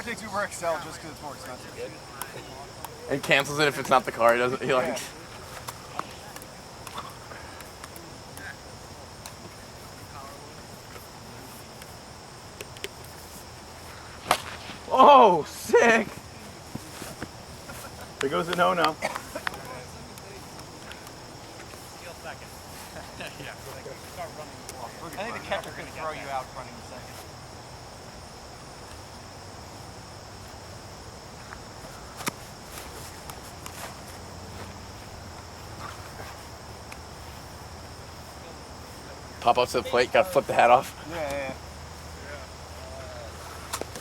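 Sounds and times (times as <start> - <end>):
crickets chirring: 0.0 - 44.0
sharp crack: 14.1 - 15.5.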